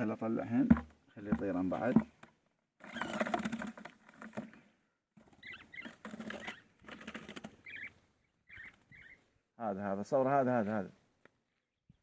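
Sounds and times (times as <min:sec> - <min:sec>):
birds rustling in a cage: 0:05.2 - 0:08.0
short bird calls: 0:05.3 - 0:06.8, 0:07.5 - 0:09.5.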